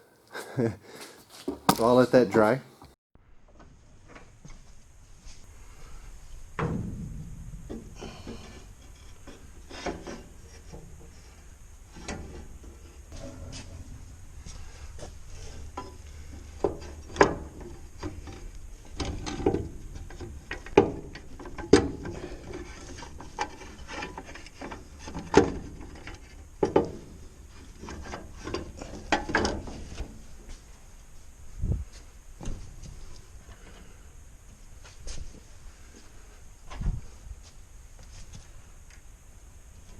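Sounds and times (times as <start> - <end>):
hand tools clicking and scraping: 0.2 - 2.2
low steady hum: 1.3 - 39.9.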